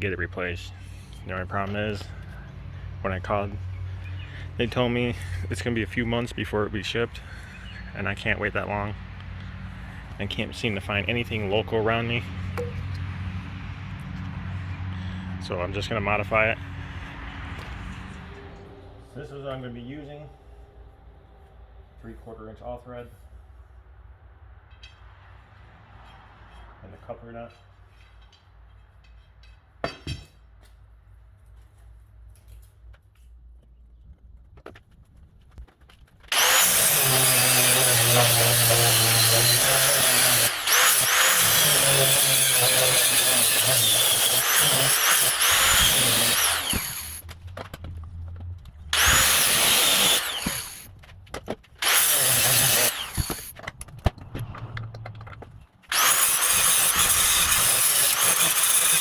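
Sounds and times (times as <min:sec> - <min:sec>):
handheld power tool running: 0:36.3 - 0:47.3, 0:48.9 - 0:51.0, 0:51.8 - 0:53.6, 0:55.9 - 0:59.0.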